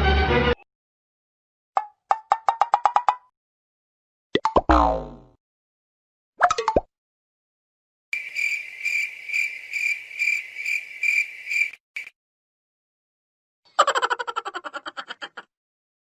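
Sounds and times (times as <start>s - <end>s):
cricket chirping: 8.2s - 12.1s.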